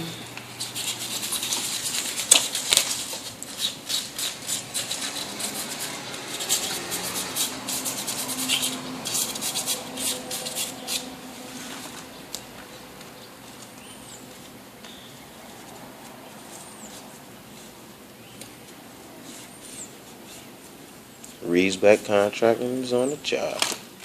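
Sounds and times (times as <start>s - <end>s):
scratchy scraping and rubbing: 0.5s - 12.0s, 19.2s - 21.4s.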